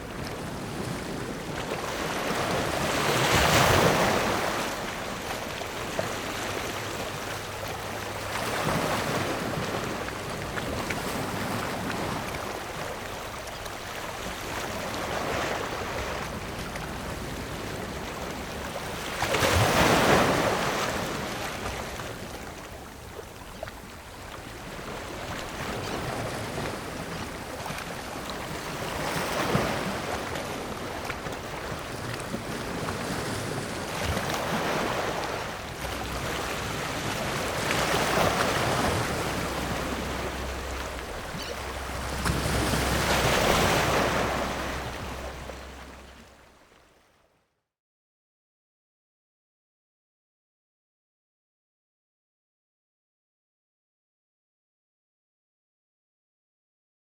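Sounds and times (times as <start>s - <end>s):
ocean waves crashing on rocks: 0.0s - 22.7s, 24.4s - 46.4s
surf washing: 0.0s - 46.6s.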